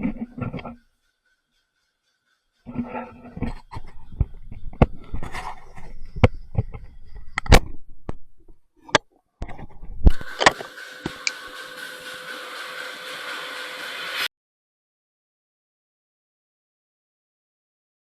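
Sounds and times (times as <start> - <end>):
steady mechanical hum: 10.0 - 14.3.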